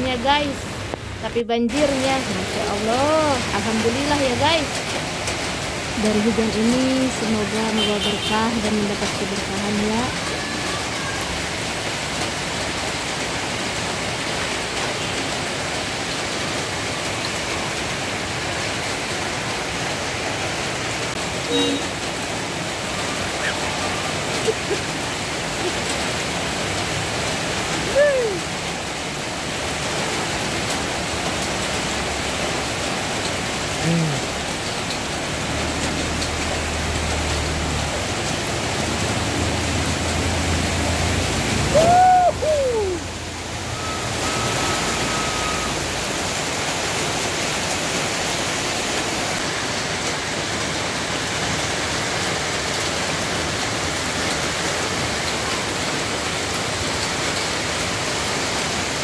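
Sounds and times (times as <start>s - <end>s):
heavy rain: 0.0s - 59.0s
loud rising and falling call: 22.9s - 24.4s, 41.6s - 45.8s.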